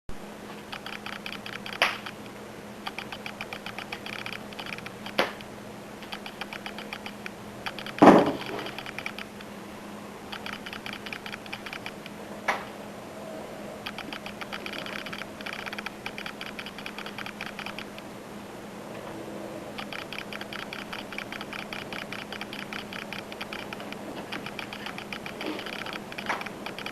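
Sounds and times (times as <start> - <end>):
steady low hum: 0.2 - 26.9
rapid light clicking: 0.6 - 9.6, 10.3 - 12.6, 13.8 - 18.1, 19.7 - 26.9
sharp knocks: 7.8 - 8.9.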